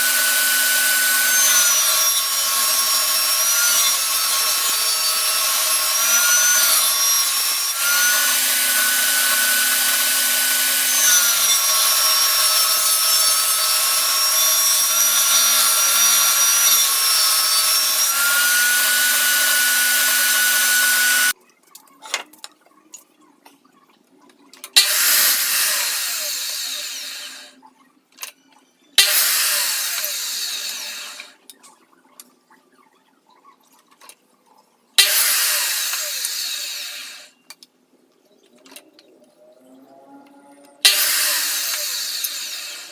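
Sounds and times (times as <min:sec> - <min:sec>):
power tool cutting wood: 0:00.0 - 0:21.4, 0:24.8 - 0:27.6, 0:29.0 - 0:31.4, 0:35.0 - 0:37.4, 0:39.5 - 0:42.9.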